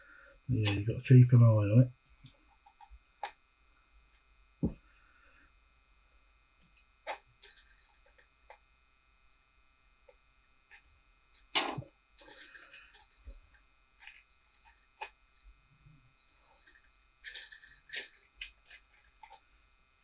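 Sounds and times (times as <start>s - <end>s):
plastic parts clicking: 16.2s - 19.4s.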